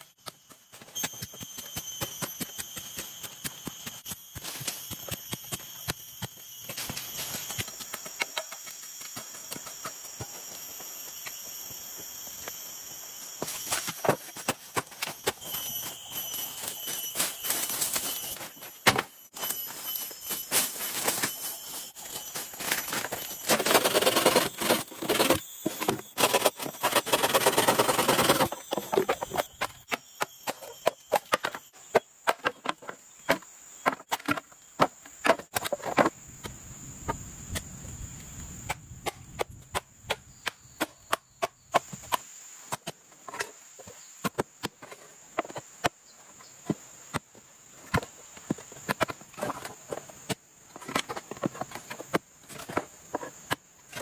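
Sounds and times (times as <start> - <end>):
scraping and rustling: 22.1 - 29.3.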